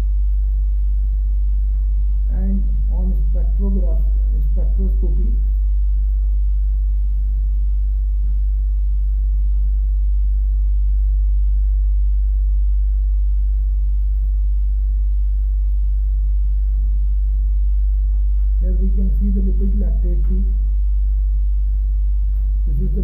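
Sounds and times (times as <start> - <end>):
low electrical hum: 0.0 - 23.0.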